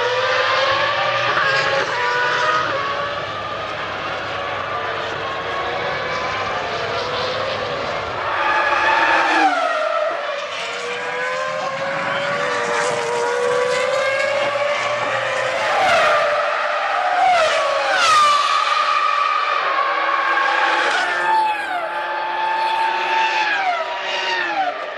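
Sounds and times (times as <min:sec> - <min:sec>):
racing car engines at high revs: 0:00.0 - 0:24.9.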